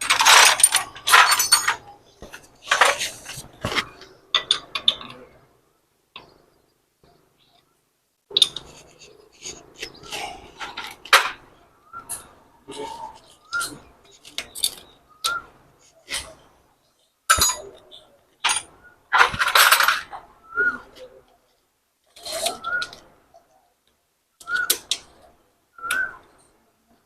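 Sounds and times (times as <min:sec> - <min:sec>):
tools clinking on metal: 0:00.0 - 0:03.1, 0:17.3 - 0:20.1
scraping rattle: 0:00.0 - 0:05.0.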